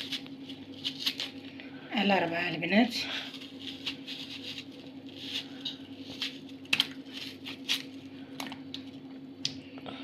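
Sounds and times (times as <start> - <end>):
knife cutting onion: 0.0 - 1.4, 3.3 - 7.9
steady low hum: 0.0 - 10.0.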